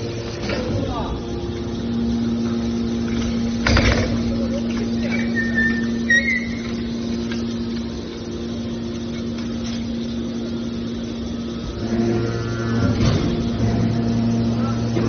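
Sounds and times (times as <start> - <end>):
hydraulic power unit humming: 0.0 - 15.0
high metallic squeaks: 5.0 - 6.9.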